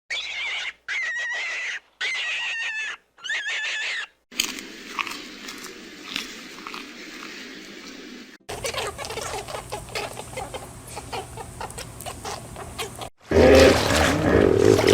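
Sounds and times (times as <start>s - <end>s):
animal high drawn-out cries: 0.1s - 4.2s, 8.5s - 13.1s.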